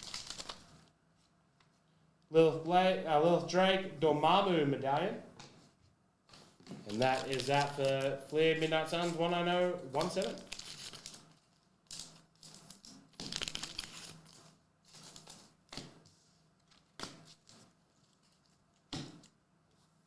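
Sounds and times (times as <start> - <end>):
wrappers and cards rustling: 0.0 - 1.3, 6.3 - 18.9.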